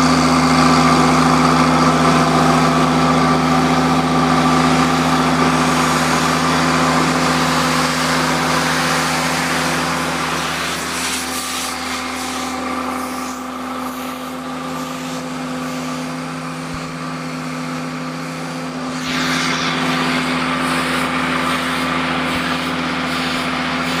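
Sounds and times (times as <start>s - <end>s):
diesel engine running: 0.0s - 24.0s
hiss: 4.6s - 17.0s, 17.7s - 24.0s.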